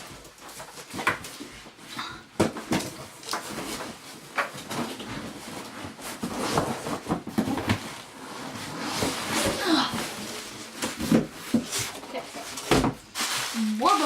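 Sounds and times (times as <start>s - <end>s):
cardboard packaging rustling: 0.0s - 14.0s.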